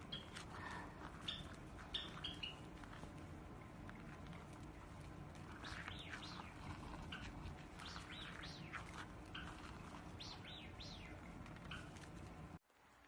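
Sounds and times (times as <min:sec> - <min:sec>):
bird chirping: 0:00.0 - 0:00.4, 0:01.1 - 0:02.7, 0:05.5 - 0:12.0
faint low hum: 0:00.0 - 0:13.0.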